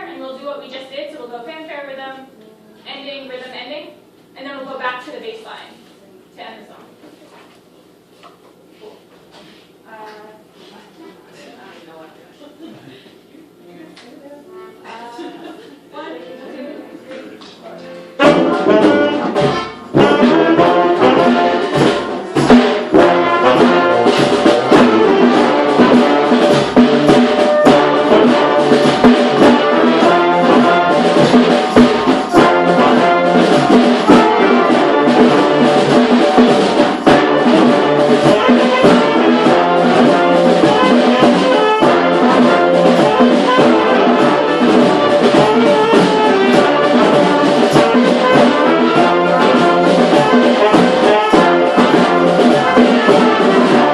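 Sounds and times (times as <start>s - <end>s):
brass band playing cumbia: 14.4s - 15.3s, 17.0s - 53.9s.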